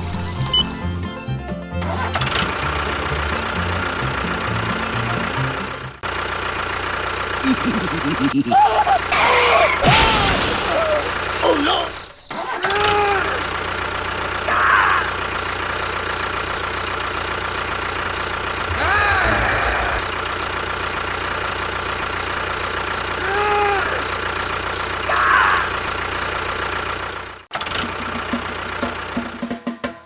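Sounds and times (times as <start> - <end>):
engine idling: 0.0 - 29.5
voice-like calls: 7.4 - 15.4, 18.7 - 20.3, 23.0 - 26.1.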